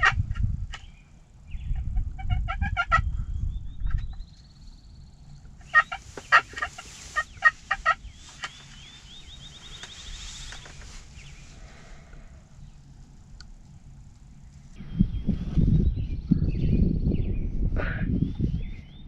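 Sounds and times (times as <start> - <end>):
low rumble: 0.0 - 19.0
turkey yelping: 2.2 - 3.0, 5.6 - 8.5.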